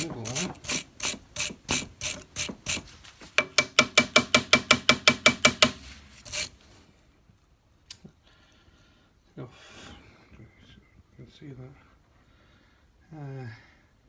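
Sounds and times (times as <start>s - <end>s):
sharp metallic clicks: 0.0s - 6.5s.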